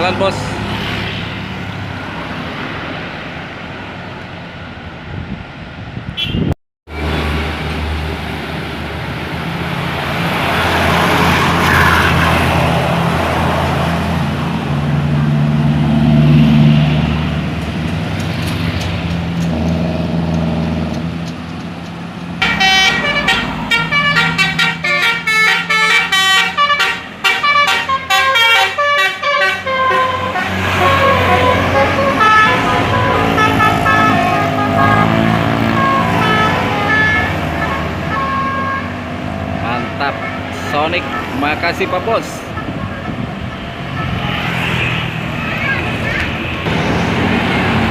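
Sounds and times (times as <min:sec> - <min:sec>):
bus engine running: 0:17.2 - 0:43.9, 0:45.2 - 0:47.9
musical air horn tune: 0:22.4 - 0:38.9.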